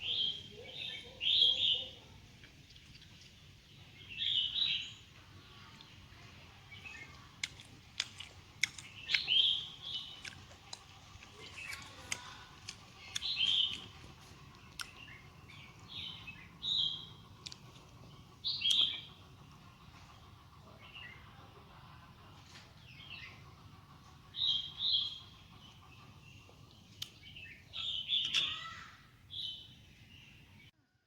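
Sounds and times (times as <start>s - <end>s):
bird chirping: 0.0s - 30.7s.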